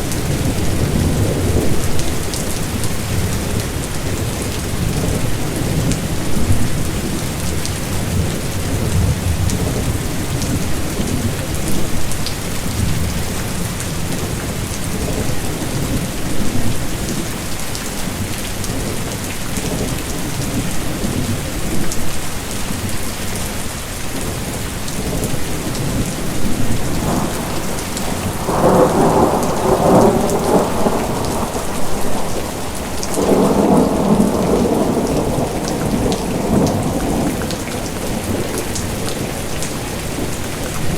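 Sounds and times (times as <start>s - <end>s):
heavy rain: 0.0s - 40.9s
rolling thunder: 25.1s - 40.9s.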